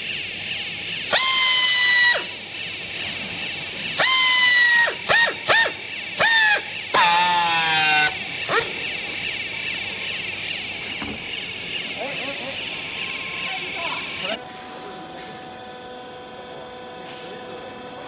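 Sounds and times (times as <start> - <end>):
high-pitched motor whine: 1.0 - 2.8, 3.9 - 14.4
hiss: 1.1 - 2.3, 4.0 - 9.0.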